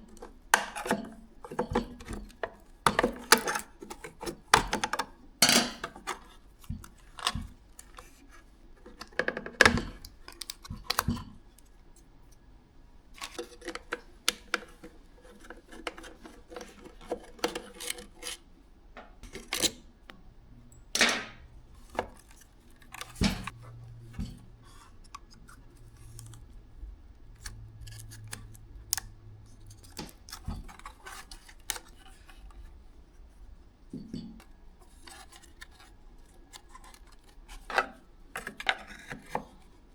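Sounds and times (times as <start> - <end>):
tools and plastic parts clicking: 27.4 - 32.1.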